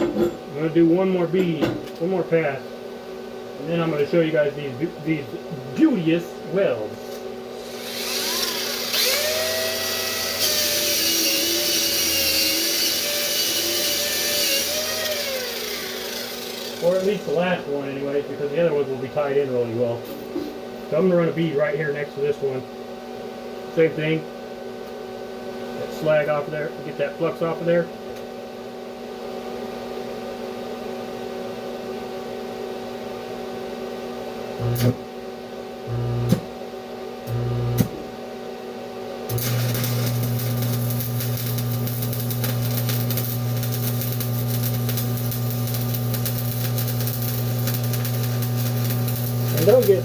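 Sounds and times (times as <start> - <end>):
power tool motor running: 7.6 - 17.4, 34.6 - 35.0, 39.3 - 50.0
welding machine humming: 7.6 - 17.6, 34.6 - 35.0, 35.9 - 36.5, 37.2 - 38.0, 39.3 - 50.0.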